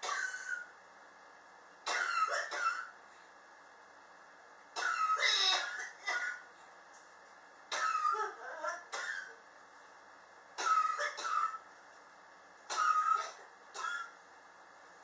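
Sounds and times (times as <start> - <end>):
person coughing: 4.8 - 6.4, 7.7 - 9.4, 12.7 - 14.1.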